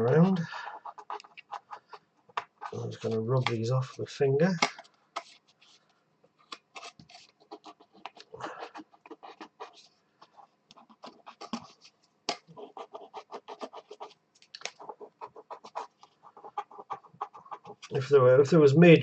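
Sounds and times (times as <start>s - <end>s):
fingertip scratching circuit board: 0.0s - 3.6s, 6.5s - 18.0s.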